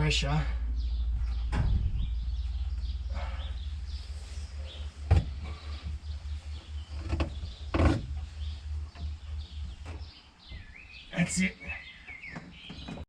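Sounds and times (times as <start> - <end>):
steady low rumble: 0.0 - 11.4
sharp knocks: 1.2 - 2.5, 5.0 - 6.0
rubbing on window seal: 3.1 - 11.1.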